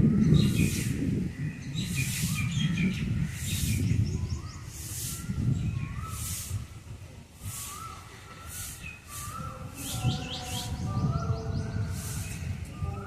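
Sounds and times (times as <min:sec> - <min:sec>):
birds chirping: 0:00.0 - 0:13.0
harsh hissing bird calls: 0:00.2 - 0:13.0.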